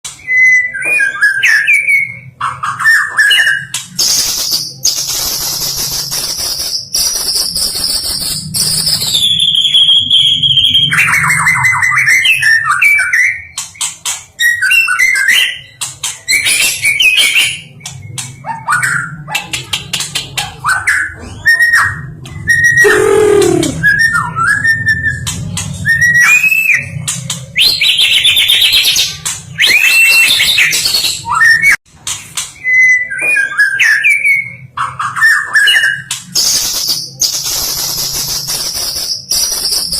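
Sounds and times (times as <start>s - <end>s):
bird singing whistles and trills: 0.2s - 19.1s, 27.6s - 31.8s, 32.6s - 39.9s.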